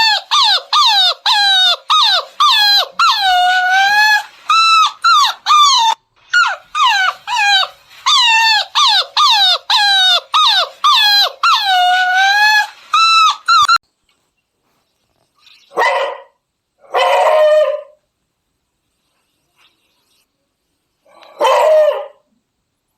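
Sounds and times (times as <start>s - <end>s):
puppy yelping: 0.0s - 13.8s
dog barking: 15.7s - 18.0s, 21.2s - 22.3s.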